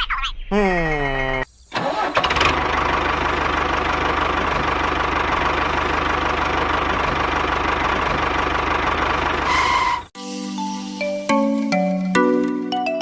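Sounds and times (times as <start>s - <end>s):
higher engine tone: 1.8s - 10.0s
small engine idling with knocking beat: 2.4s - 9.5s.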